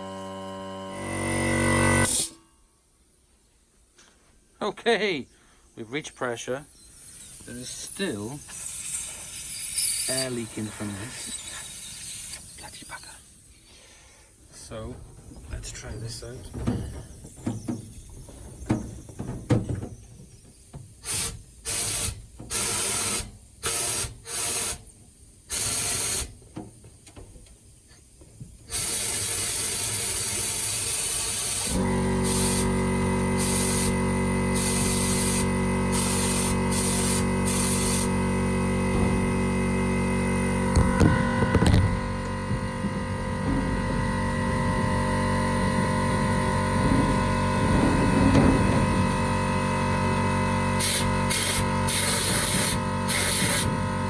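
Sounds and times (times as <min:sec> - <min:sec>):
air compressor motor running: 0:00.0 - 0:02.4, 0:06.6 - 0:12.8, 0:14.2 - 0:26.4, 0:28.6 - 0:54.0
compressed air hissing in bursts: 0:06.6 - 0:14.8, 0:19.9 - 0:26.4, 0:27.6 - 0:39.4, 0:50.7 - 0:53.9.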